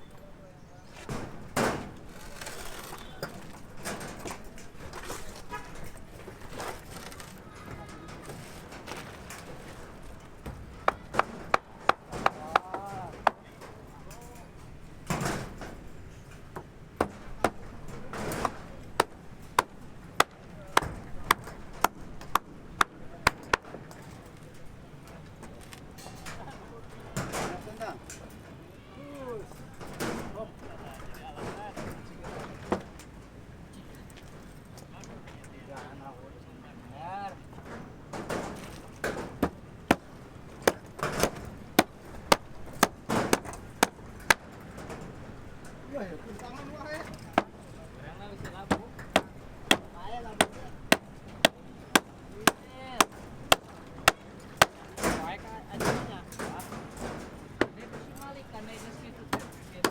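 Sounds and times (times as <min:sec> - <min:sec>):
short scraping noises: 0:00.9 - 0:03.7.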